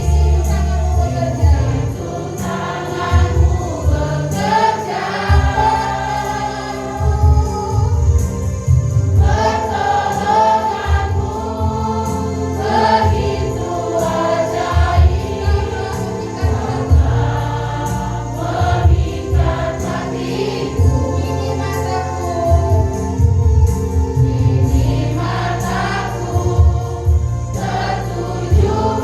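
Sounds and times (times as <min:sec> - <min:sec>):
church choir singing: 0:00.0 - 0:29.0
instrumental accompaniment: 0:00.0 - 0:29.0.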